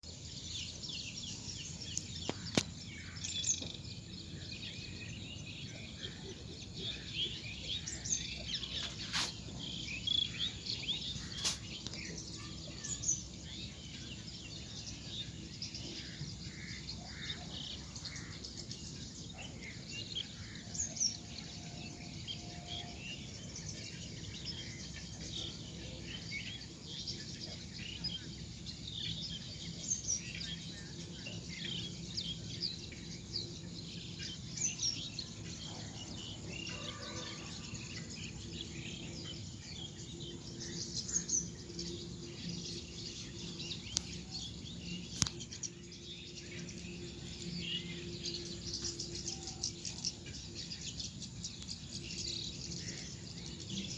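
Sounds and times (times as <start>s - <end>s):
birds chirping: 0.0s - 53.9s
background hiss: 7.0s - 15.8s.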